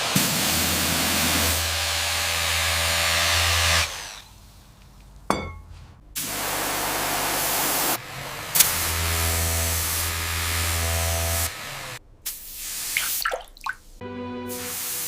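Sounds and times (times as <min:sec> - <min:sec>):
power tool hissing: 0:06.2 - 0:15.0.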